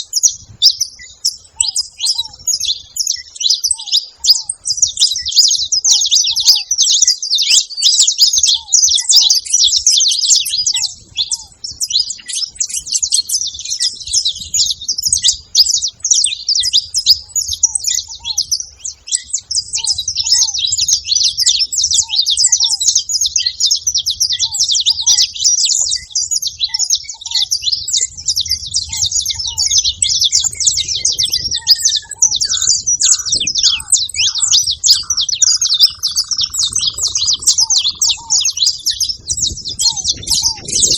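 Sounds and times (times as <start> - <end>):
finches chirping and twittering: 0.0 - 40.9.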